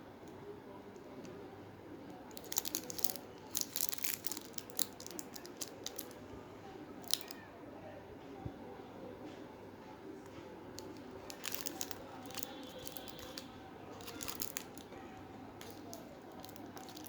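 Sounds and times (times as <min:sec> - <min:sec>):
plastic wrapper crackling: 0:02.2 - 0:06.2, 0:07.0 - 0:07.4, 0:10.8 - 0:17.0.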